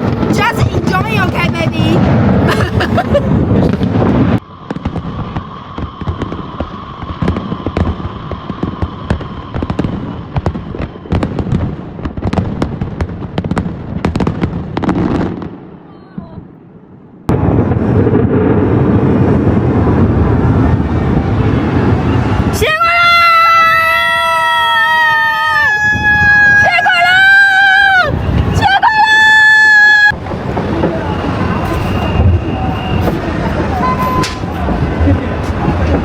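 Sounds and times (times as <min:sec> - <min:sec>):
fireworks cracking and popping: 0:00.0 - 0:15.7, 0:23.4 - 0:36.0.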